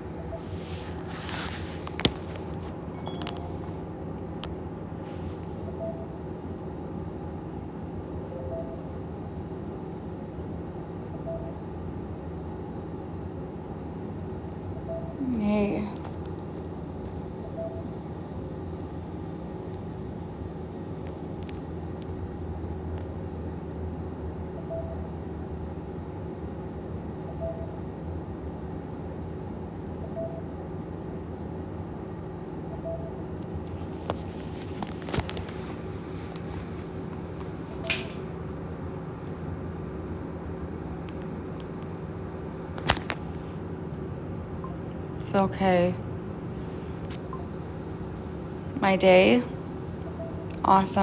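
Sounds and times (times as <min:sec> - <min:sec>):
low background hum: 0:00.0 - 0:51.0
faint short beep: 0:02.9 - 0:03.8.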